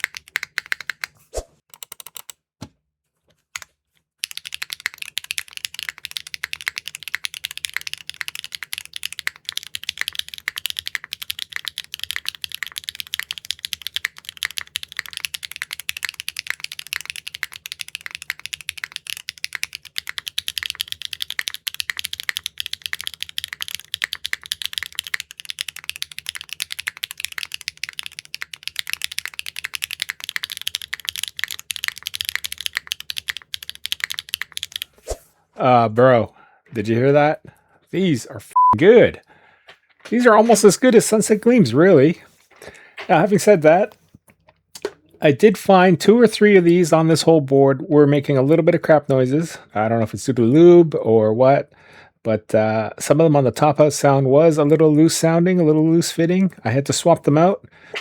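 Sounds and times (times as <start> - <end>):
typing on mechanical keyboard: 0.0 - 1.1, 1.7 - 2.4, 3.6 - 34.9.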